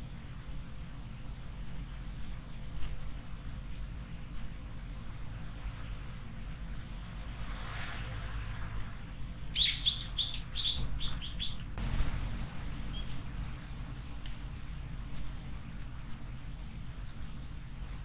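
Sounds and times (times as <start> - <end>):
bird chirping: 9.5 - 11.8, 12.8 - 13.2.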